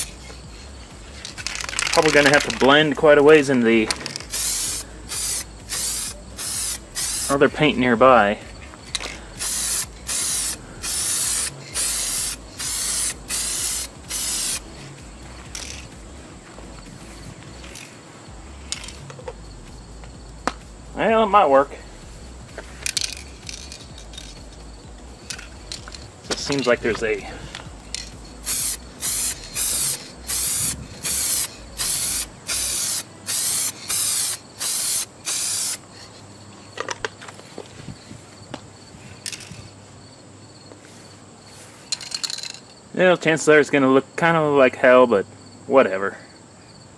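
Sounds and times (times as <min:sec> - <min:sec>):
aerosol can spraying: 0:00.0 - 0:00.3, 0:04.1 - 0:07.7, 0:09.4 - 0:15.9, 0:28.0 - 0:35.8.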